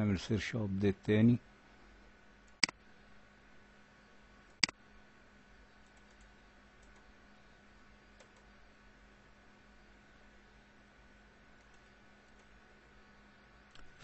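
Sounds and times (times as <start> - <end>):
faint hum: 0.0 - 14.0
computer mouse clicking: 5.8 - 7.1, 8.2 - 8.5, 11.6 - 12.6.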